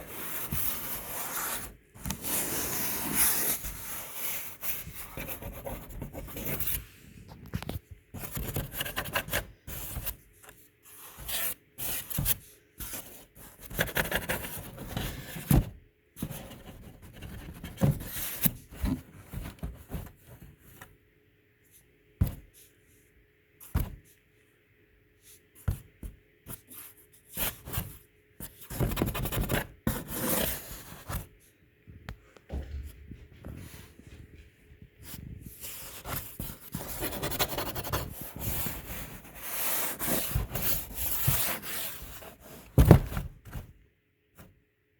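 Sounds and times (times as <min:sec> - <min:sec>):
kitten scratching in a box: 0:10.9 - 0:15.5, 0:35.5 - 0:42.8.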